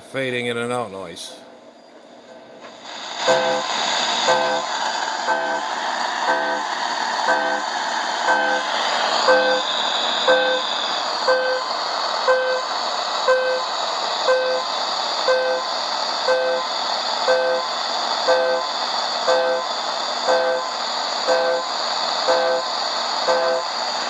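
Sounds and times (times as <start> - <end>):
radio static hiss: 2.7 - 16.3
pinging beep: 3.3 - 3.7, 4.3 - 4.6, 5.3 - 5.6, 6.3 - 6.6, 7.3 - 7.7, 8.3 - 8.7, 9.3 - 9.7, 10.3 - 10.7, 11.3 - 11.7, 12.3 - 12.7, 13.3 - 13.7, 14.3 - 14.7, 15.3 - 15.7, 16.3 - 16.7, 17.3 - 17.7, 18.3 - 18.7, 19.3 - 19.7, 20.3 - 20.7, 21.3 - 21.7, 22.3 - 22.6, 23.3 - 23.6.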